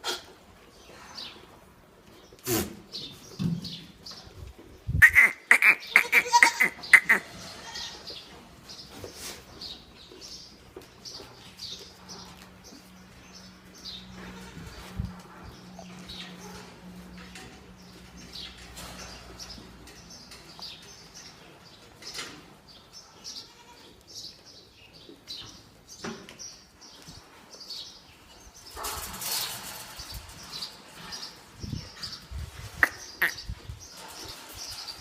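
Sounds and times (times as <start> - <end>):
birds chirping: 0.7 - 14.8, 15.4 - 35.0.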